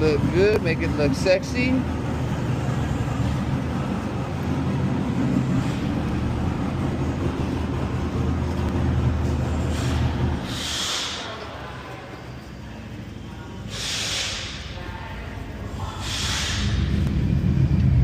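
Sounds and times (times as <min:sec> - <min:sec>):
short hiss: 0:13.7 - 0:14.6.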